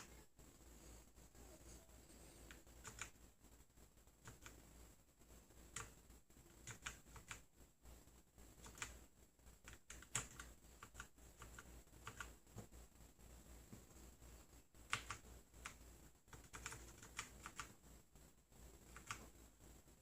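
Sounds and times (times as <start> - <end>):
keyboard keys clicking: 2.5 - 3.2, 8.6 - 9.0, 9.6 - 12.4, 14.9 - 17.8.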